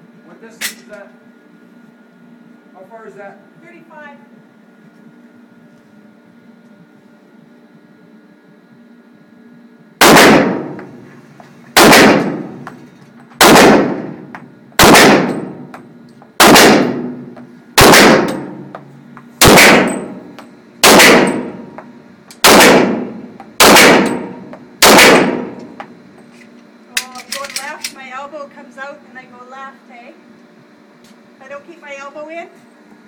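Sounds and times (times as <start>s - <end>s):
pistol shots with echo: 10.0s - 10.9s, 11.8s - 12.6s, 13.4s - 14.2s, 14.8s - 15.7s, 16.4s - 18.7s, 19.4s - 20.2s, 20.8s - 21.6s, 22.4s - 25.6s.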